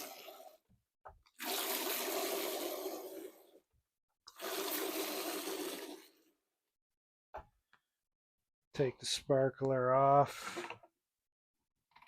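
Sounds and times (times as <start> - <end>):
liquid gushing from spout: 0.0 - 0.6, 1.4 - 3.5, 4.3 - 6.2.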